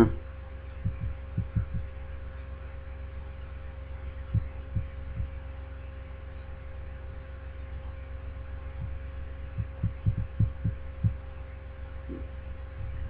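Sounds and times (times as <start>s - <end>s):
steady low hum: 0.0s - 13.0s
soft low thumps: 0.8s - 1.9s, 4.3s - 5.4s, 8.7s - 11.2s, 12.1s - 13.0s.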